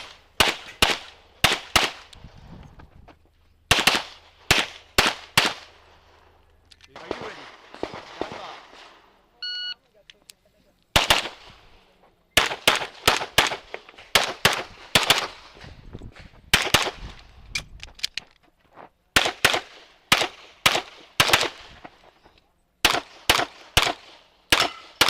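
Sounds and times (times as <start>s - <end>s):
pistol shots: 0.0s - 2.1s, 3.7s - 5.8s, 7.0s - 8.9s, 10.9s - 11.6s, 12.4s - 15.5s, 16.5s - 17.1s, 19.2s - 21.8s, 22.8s - 25.0s.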